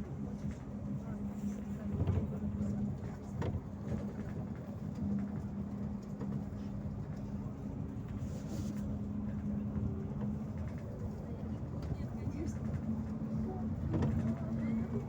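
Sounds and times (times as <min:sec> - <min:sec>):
bus engine drone: 0:00.0 - 0:15.0
low road rumble: 0:00.0 - 0:15.0.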